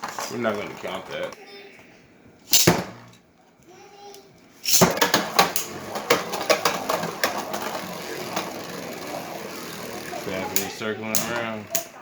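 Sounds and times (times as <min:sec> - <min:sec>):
sharp plastic clatter: 0:02.5 - 0:03.2, 0:04.6 - 0:12.0
spinning tops clicking and rattling: 0:02.5 - 0:03.2, 0:04.6 - 0:12.0.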